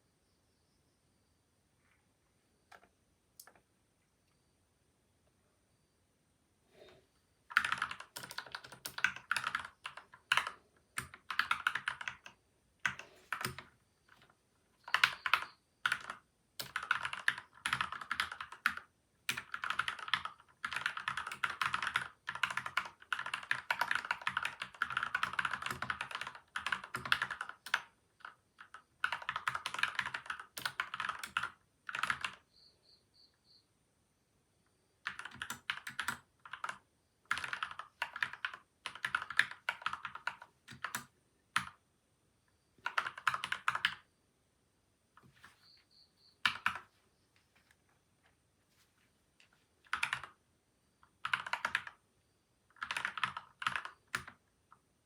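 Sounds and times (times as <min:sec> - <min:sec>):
mechanical keyboard typing: 0:07.5 - 0:32.4, 0:35.0 - 0:41.8, 0:42.8 - 0:44.0, 0:46.4 - 0:46.9, 0:49.8 - 0:50.4, 0:51.0 - 0:52.0, 0:52.7 - 0:54.8.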